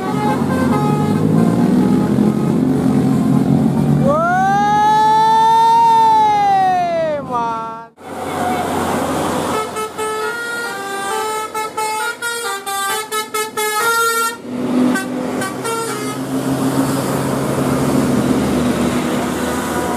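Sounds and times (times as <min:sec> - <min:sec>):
musical bus air horn: 0:00.0 - 0:02.8, 0:09.5 - 0:16.3
low drone with road noise: 0:00.0 - 0:19.9.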